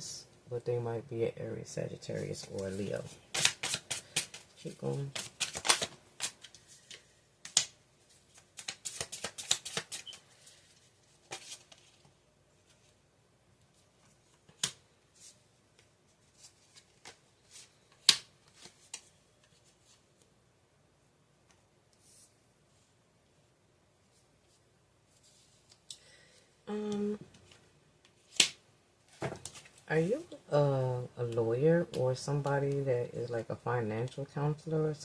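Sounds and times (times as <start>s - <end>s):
cards shuffling: 2.4s - 12.9s, 14.0s - 20.0s
sharp card snaps: 5.2s - 6.4s, 28.3s - 28.6s.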